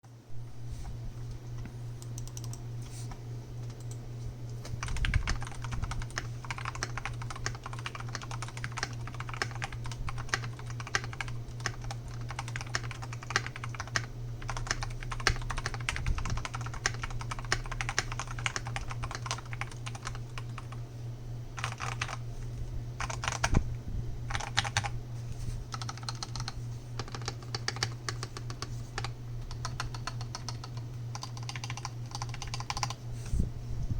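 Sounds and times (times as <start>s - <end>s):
mechanical keyboard typing: 2.0s - 2.6s, 4.7s - 20.8s, 21.6s - 22.2s, 23.0s - 23.6s, 24.3s - 24.9s, 25.7s - 33.0s.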